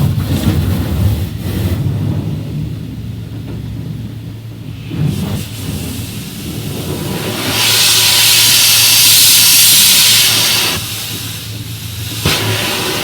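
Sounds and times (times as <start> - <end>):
water spray hissing: 5.1 - 13.0.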